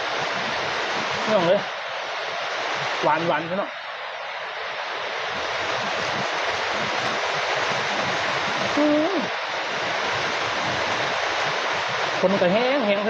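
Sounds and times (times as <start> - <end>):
heavy rain: 0.0 - 13.0
man humming: 8.7 - 9.4.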